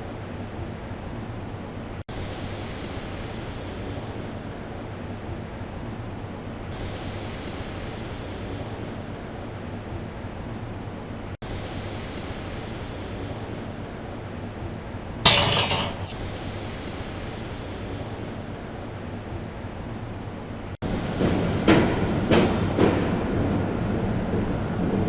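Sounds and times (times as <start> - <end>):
sharp metallic clatter: 15.3 - 16.2
rushing railway noise: 20.9 - 25.0.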